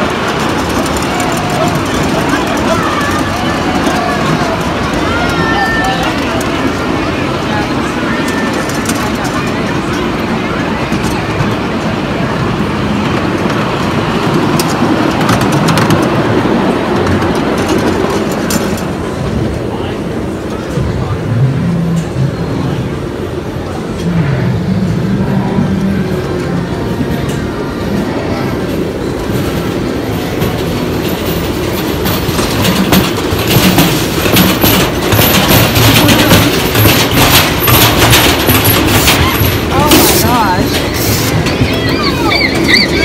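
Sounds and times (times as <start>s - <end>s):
moving vehicle rumble: 0.0s - 43.0s
train wheels clattering on rails: 0.0s - 43.0s
clicks and rattles: 30.4s - 41.9s.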